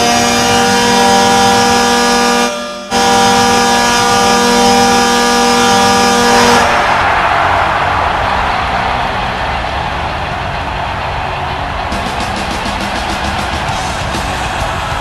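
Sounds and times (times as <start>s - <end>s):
hockey goal horn: 0.0s - 7.3s.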